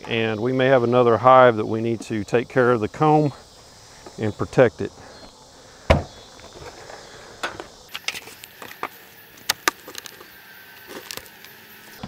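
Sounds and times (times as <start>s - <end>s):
wooden hive parts clicking and knocking: 7.4s - 12.0s.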